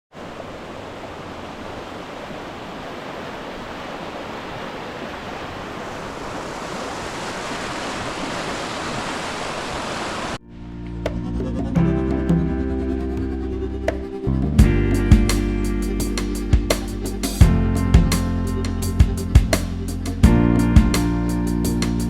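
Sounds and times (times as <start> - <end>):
waterfall rushing: 0.1 - 10.4.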